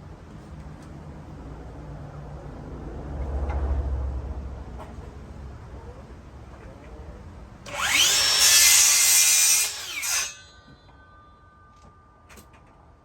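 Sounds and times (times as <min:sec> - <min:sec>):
electric saw cutting wood: 0:07.7 - 0:10.8.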